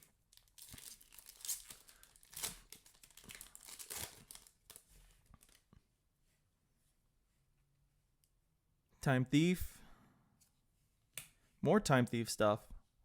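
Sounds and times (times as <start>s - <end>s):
foil wrapper tearing and crinkling: 0.0s - 4.8s.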